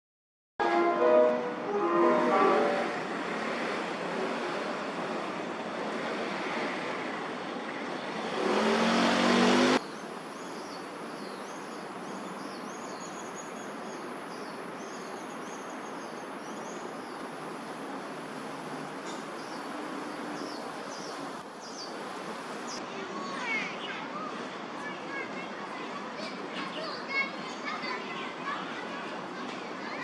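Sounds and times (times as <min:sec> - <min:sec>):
road traffic noise: 0:00.6 - 0:30.0
passing vehicle engine drone: 0:02.2 - 0:09.8.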